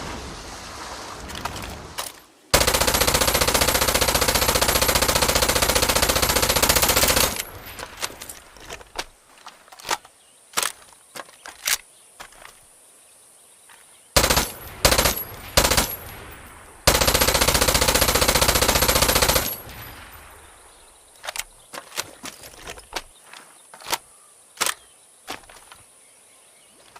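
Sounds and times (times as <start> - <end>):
submachine gun firing bursts: 2.5 - 8.3, 14.2 - 16.2, 16.8 - 19.9.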